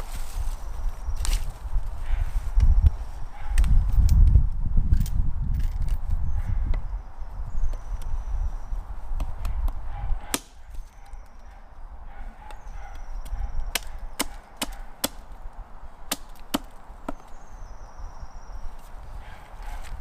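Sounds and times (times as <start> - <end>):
axe chopping wood: 9.2 - 10.6, 13.2 - 15.4, 16.1 - 17.4.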